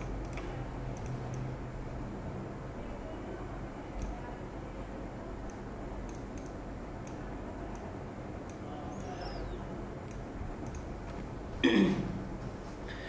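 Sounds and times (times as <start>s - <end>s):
computer mouse clicks: 0.0s - 1.7s, 4.0s - 4.2s, 5.4s - 11.2s
steady background hum: 0.0s - 13.0s.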